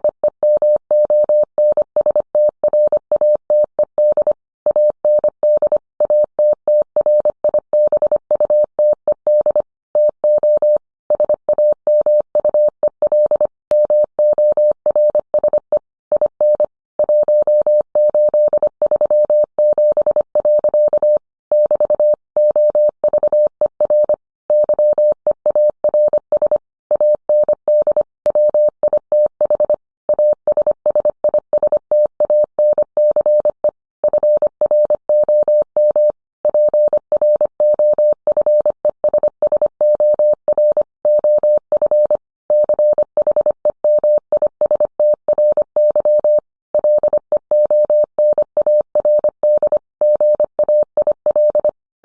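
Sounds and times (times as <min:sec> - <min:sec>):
morse code beeps: 0:00.0 - 0:51.8.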